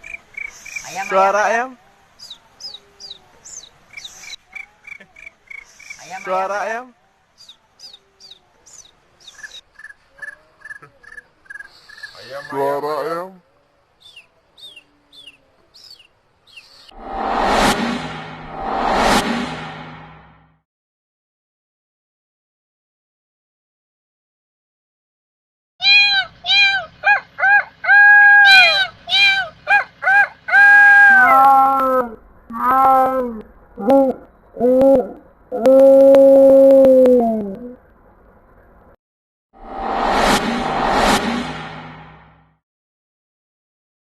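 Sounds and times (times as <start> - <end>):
person imitating animal cries: 25.8 - 37.8.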